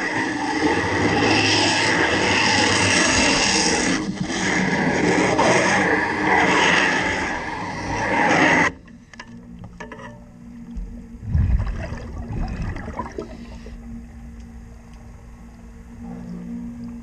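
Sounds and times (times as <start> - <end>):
steady low underwater hum: 0.0 - 17.0
low gurgling rumble: 10.3 - 14.2.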